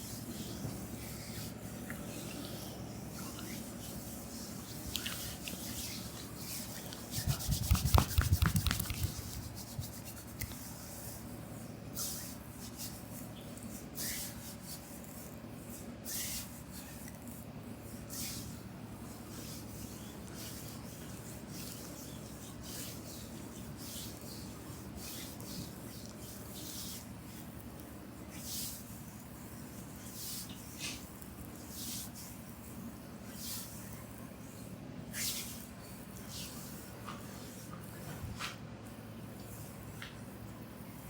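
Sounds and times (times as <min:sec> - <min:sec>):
palms swishing over skin: 0:00.2 - 0:11.2
hands thumping and slapping skin: 0:07.4 - 0:09.2.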